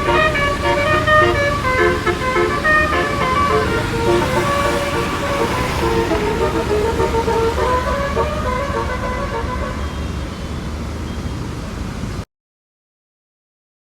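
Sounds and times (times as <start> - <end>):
multi-tone bus horn tune: 0.0 - 10.9
vehicle engines and traffic rumble: 0.0 - 12.2.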